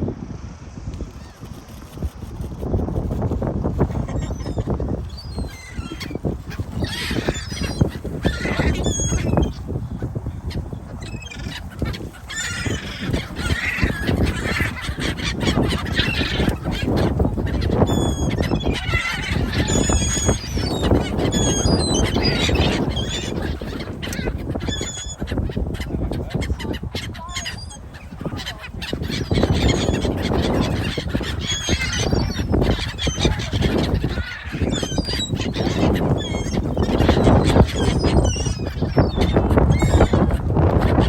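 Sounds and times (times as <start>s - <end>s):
flock of birds calling: 1.1s - 41.0s.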